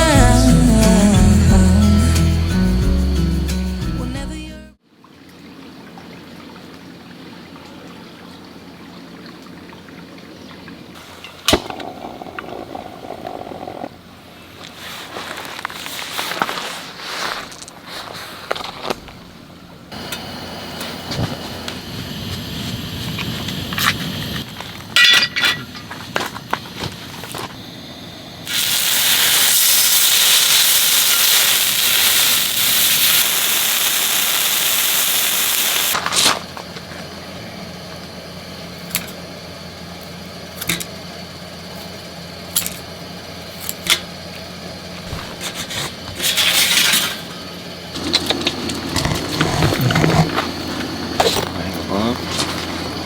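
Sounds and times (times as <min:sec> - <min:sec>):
strong hiss: 0:28.5 - 0:36.0.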